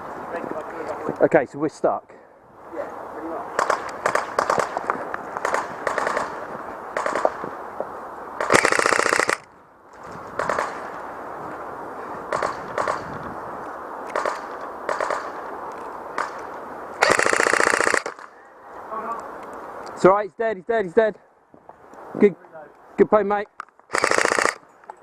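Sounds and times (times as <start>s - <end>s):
airsoft guns firing: 3.6s - 4.8s, 5.4s - 7.4s, 8.4s - 9.5s, 10.4s - 10.8s, 12.3s - 13.1s, 14.1s - 15.4s, 16.2s - 16.4s, 17.0s - 18.3s, 23.9s - 24.6s.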